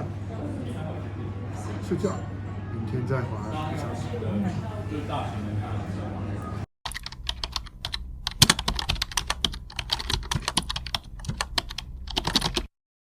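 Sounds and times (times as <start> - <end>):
keyboard typing: 6.9 - 12.7.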